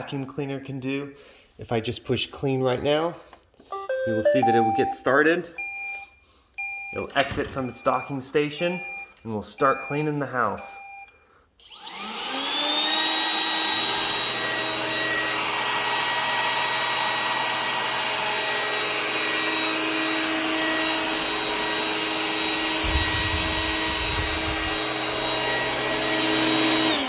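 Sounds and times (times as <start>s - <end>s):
robot vacuum motor whine: 11.6s - 27.0s.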